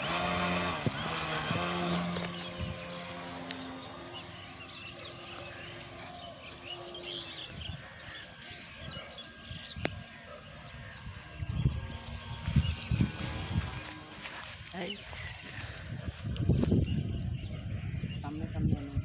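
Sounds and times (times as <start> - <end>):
model plane electric motor hum: 0.0 - 19.0
small birds chirping: 0.0 - 19.0
wind thumps on microphone: 15.8 - 18.9.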